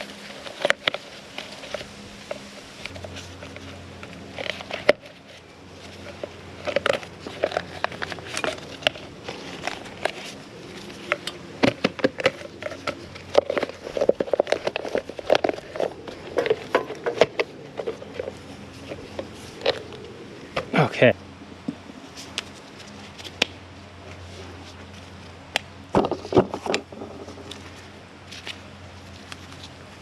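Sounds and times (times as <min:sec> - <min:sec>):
parts clicking and knocking: 0:00.0 - 0:20.8, 0:25.5 - 0:28.6.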